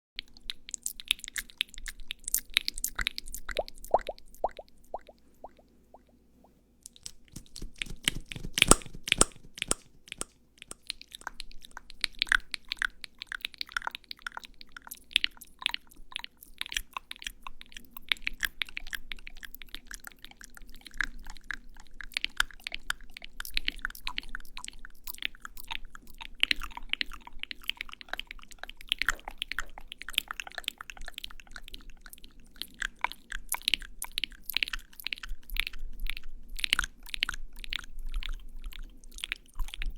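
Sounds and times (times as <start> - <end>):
crunchy crackling and clicking: 6.8 - 15.6.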